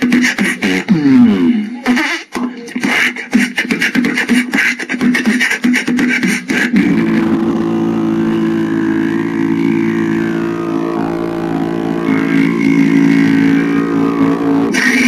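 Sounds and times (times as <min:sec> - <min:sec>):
beatboxed buzzing hum: 0:00.0 - 0:15.0.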